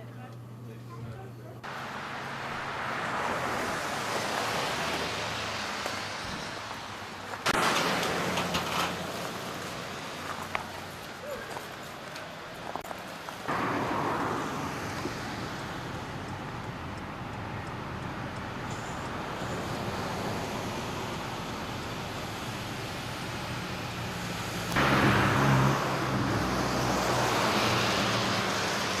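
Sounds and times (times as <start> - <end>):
road traffic passing: 0.0 - 29.0
vehicle passing close: 1.6 - 11.1, 13.5 - 29.0.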